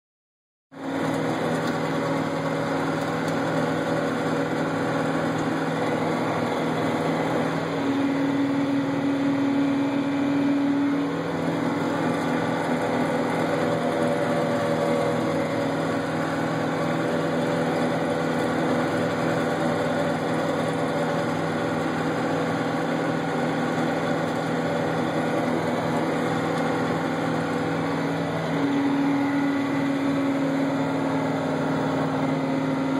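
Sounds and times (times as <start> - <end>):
snow blower engine running: 0.8 - 32.9.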